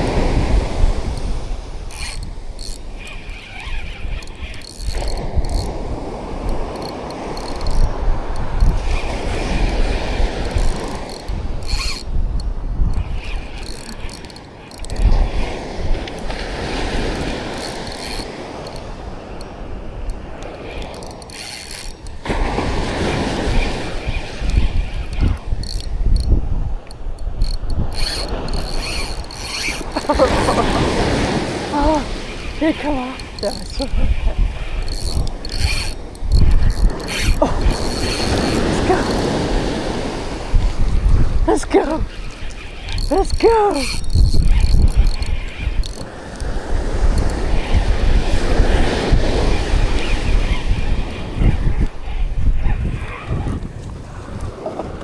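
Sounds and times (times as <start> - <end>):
surf rumble: 0.0 - 3.0, 22.1 - 43.8
fishing reel whirring: 0.0 - 53.5
wind: 0.0 - 55.0.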